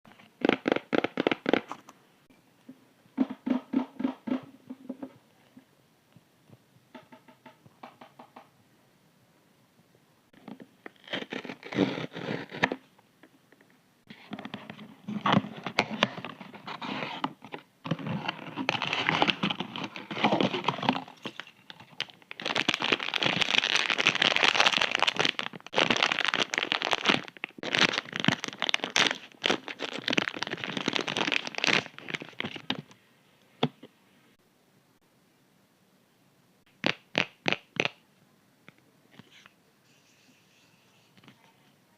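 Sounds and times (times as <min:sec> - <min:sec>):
packaging crinkling and tearing: 0:17.9 - 0:32.9.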